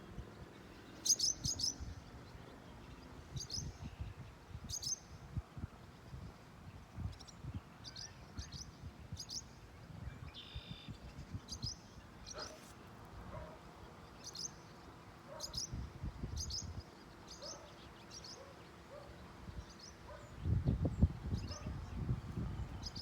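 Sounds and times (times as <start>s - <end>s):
small songbird chirping: 0.2s - 5.3s, 6.0s - 23.0s.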